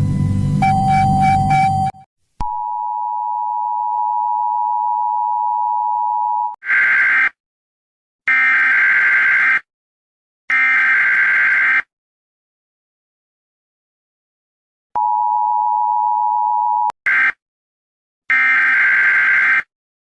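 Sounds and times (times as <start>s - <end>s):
steady electronic alert tone: 0.1s - 2.0s.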